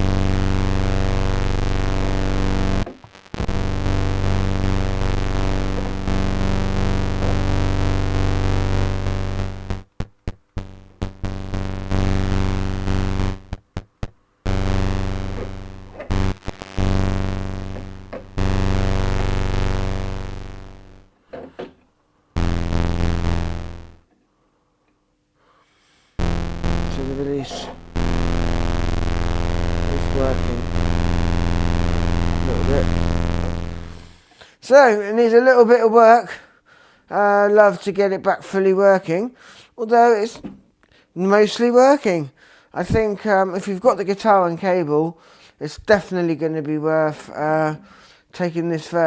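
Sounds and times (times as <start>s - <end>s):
synthesizer low held notes: 26.2s - 34.0s.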